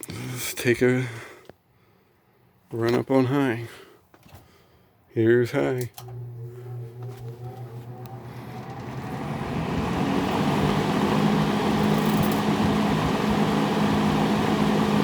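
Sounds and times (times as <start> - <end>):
box fan running with low hum: 6.0 - 15.0.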